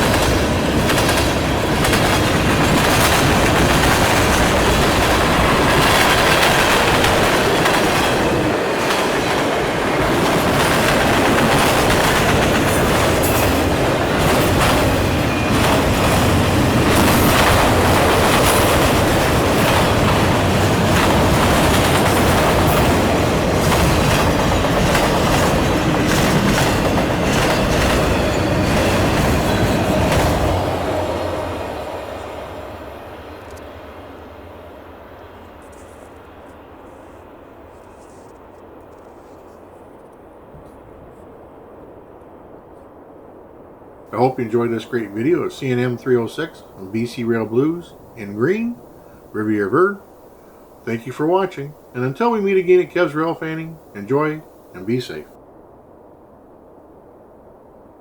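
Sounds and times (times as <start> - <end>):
train wheels clattering over rails: 0.0 - 33.8.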